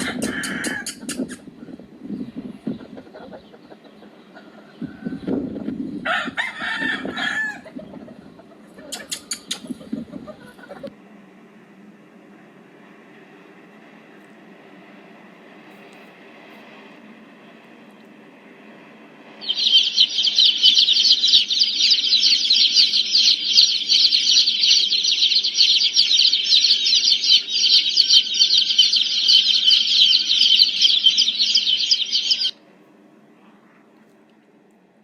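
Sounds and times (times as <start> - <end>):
baby chicks peeping: 0.0 - 1.4, 2.2 - 10.9, 19.4 - 32.6.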